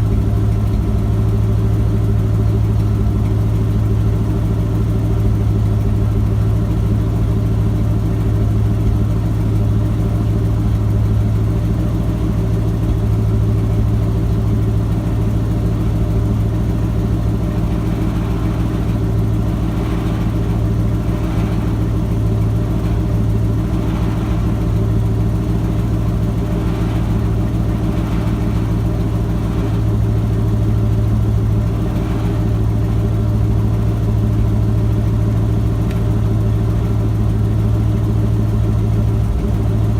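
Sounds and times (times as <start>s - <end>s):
truck engine idling: 0.0s - 39.9s.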